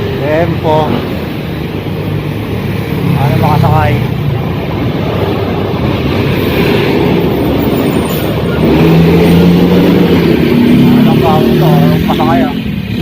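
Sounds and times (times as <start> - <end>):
roadside traffic: 0.0 - 13.0
vehicle engine humming: 0.0 - 13.0.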